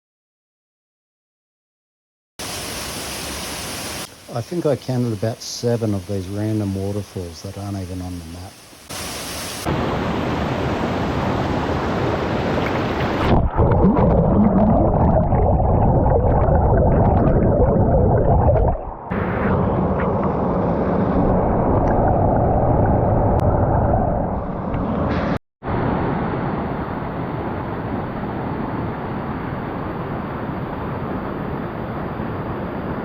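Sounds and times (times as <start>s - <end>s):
waterfall roaring: 2.4s - 13.3s.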